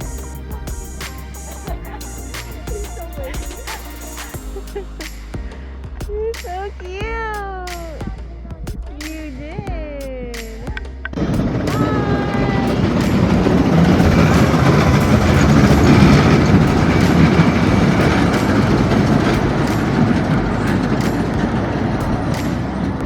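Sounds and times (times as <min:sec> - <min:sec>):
small train rumbling: 0:11.2 - 0:23.0.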